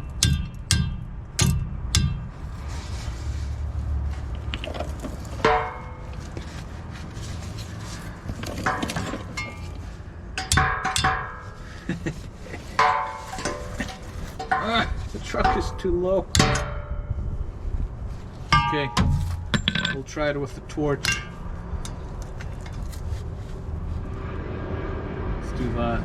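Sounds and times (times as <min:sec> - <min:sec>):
hammer striking metal shaft: 0:00.0 - 0:02.4, 0:05.4 - 0:06.2, 0:10.4 - 0:11.7, 0:12.7 - 0:17.2, 0:18.5 - 0:20.2, 0:21.0 - 0:22.0.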